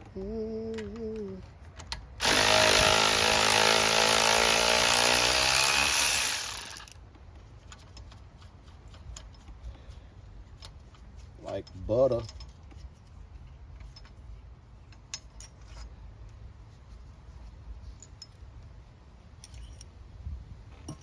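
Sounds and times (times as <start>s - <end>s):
power tool motor running: 2.2s - 7.0s.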